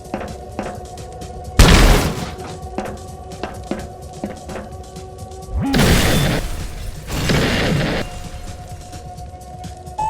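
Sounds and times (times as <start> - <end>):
booming blast sound effects: 1.6 - 2.4.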